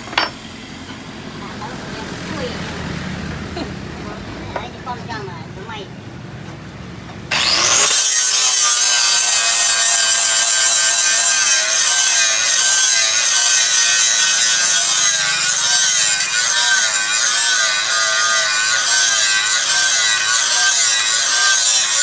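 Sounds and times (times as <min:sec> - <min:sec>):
power grinder grinding steel: 0:07.3 - 0:22.0.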